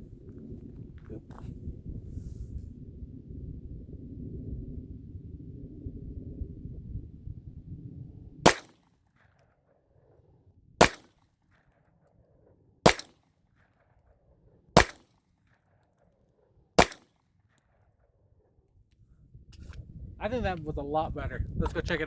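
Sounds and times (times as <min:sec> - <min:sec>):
pistol shots: 0:08.5 - 0:09.3, 0:10.8 - 0:11.2, 0:12.8 - 0:13.3, 0:14.8 - 0:15.2, 0:16.8 - 0:17.2.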